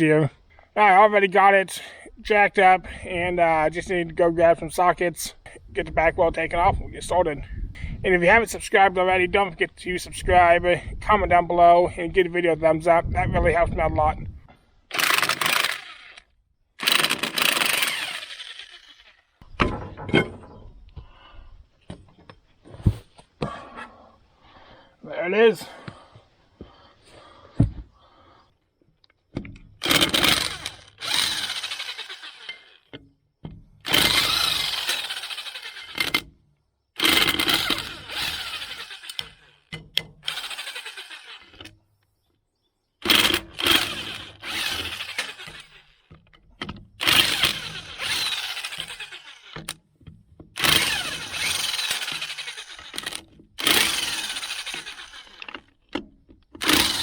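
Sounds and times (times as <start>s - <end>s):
impact wrench hammering: 50.6s - 55.5s, 56.6s - 57.0s.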